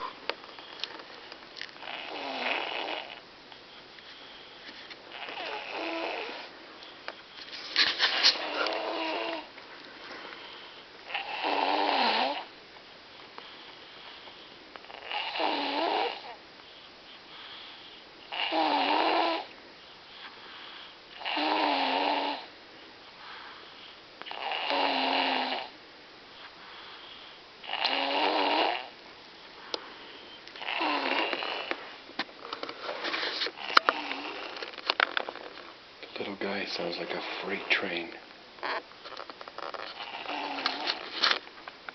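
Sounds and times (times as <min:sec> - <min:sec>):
child snoring loudly: 0:01.8 - 0:03.2, 0:05.1 - 0:06.5, 0:08.4 - 0:09.5, 0:11.1 - 0:12.5, 0:14.8 - 0:16.4, 0:18.3 - 0:19.5, 0:21.2 - 0:22.5, 0:24.3 - 0:25.8, 0:27.6 - 0:29.0, 0:30.6 - 0:31.8, 0:33.6 - 0:34.6, 0:39.9 - 0:41.0
quiet breathing: 0:03.5 - 0:11.3, 0:12.2 - 0:15.4, 0:16.0 - 0:18.5, 0:19.4 - 0:21.3, 0:22.4 - 0:24.4, 0:25.6 - 0:38.3.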